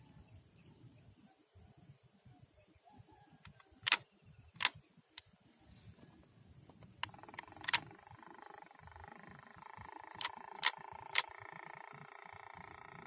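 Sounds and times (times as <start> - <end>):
sharp clicks: 3.4 - 5.3, 6.8 - 8.2, 9.7 - 11.8
high-pitched insect chirring: 7.0 - 13.0.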